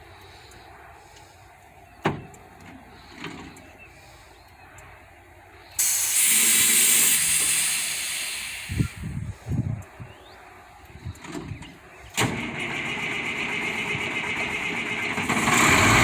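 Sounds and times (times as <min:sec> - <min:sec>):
air brake hiss: 0:05.8 - 0:09.5.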